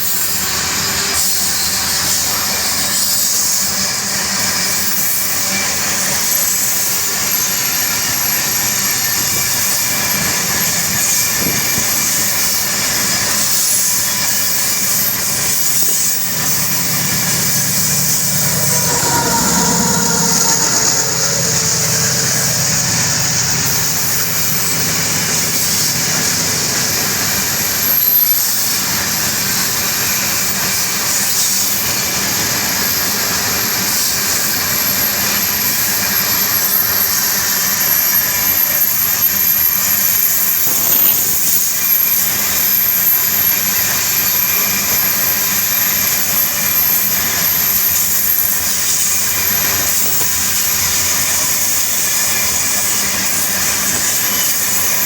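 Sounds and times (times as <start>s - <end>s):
high-pitched whine: 14.2s - 28.2s.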